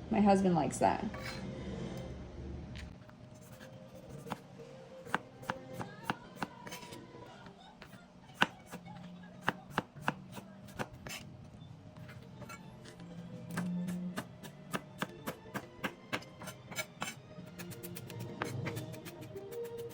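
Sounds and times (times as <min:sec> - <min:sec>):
soft background music: 0:00.0 - 0:19.9
knife chopping vegetables: 0:03.4 - 0:11.3, 0:12.0 - 0:19.9.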